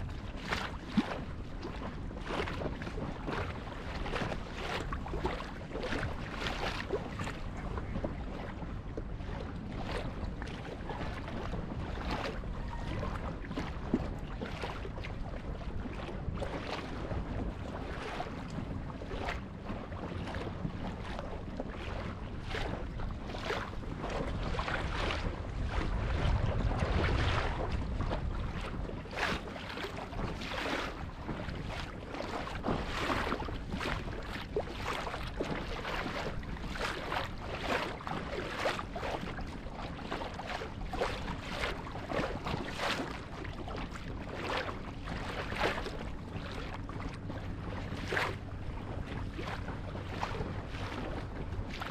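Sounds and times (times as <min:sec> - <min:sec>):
water splashing against boat hull: 0:00.0 - 0:51.9
low rumble: 0:23.8 - 0:29.2.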